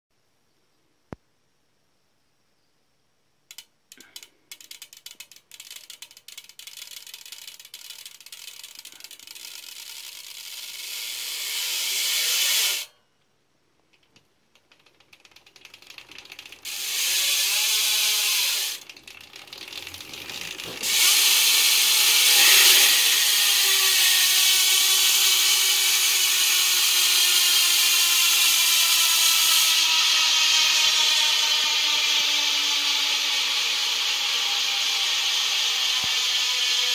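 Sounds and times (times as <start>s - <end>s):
bicycle hub ratchet clicking: 3.5s - 13.0s, 14.5s - 36.9s
hub buzzing: 14.6s - 36.9s.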